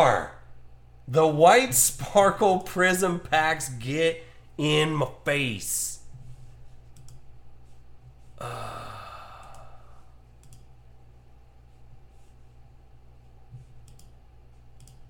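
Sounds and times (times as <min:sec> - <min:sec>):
man sighing: 0:08.4 - 0:10.2.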